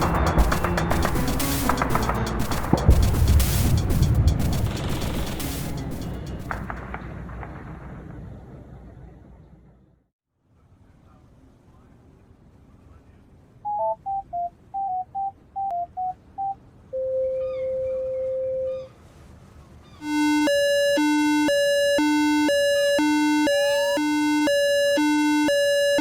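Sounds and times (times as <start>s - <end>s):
steady electronic tone: 0.0s - 6.8s, 20.0s - 26.0s
short electronic beeps: 13.7s - 17.3s, 20.0s - 26.0s
buzzy two-note alarm: 20.0s - 26.0s.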